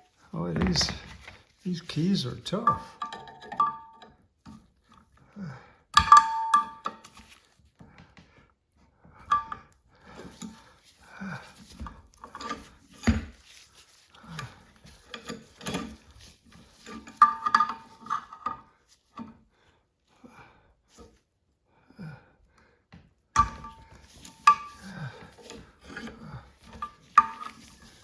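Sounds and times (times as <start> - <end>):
metal tools clinking against vise: 1.9 - 4.1, 14.4 - 16.1, 16.7 - 18.6.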